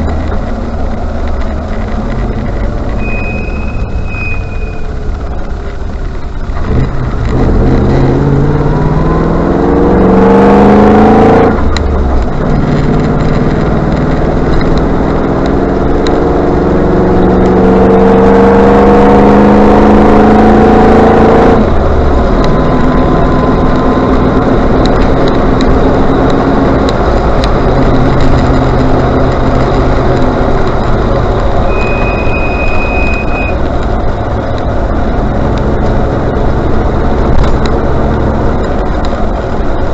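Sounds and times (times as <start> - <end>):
car engine revving: 0.0 - 39.9
high-pitched brake squeal: 3.0 - 5.1, 31.6 - 33.6.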